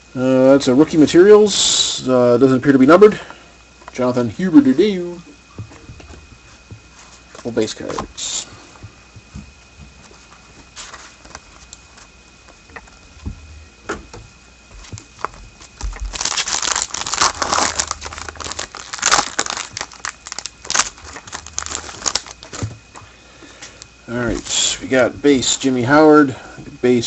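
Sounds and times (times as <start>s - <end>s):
card pack wrapper tearing and crinkling: 15.0s - 22.7s.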